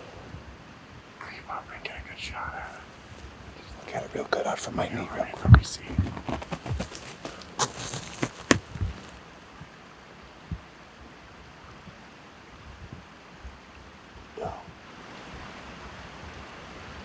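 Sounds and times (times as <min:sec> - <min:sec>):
faint outdoor hush: 0:00.0 - 0:09.4
clothing and gear rustling: 0:02.6 - 0:09.3.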